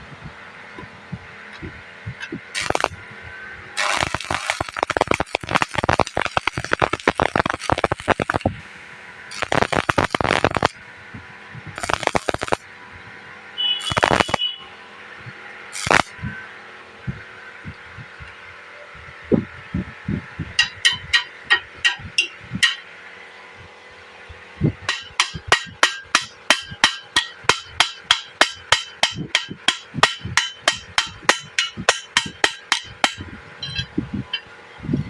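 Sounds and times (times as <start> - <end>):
welding arc crackling: 2.1 - 3.1, 3.8 - 11.0, 11.6 - 12.7, 13.6 - 14.6, 15.7 - 16.2, 24.9 - 33.3.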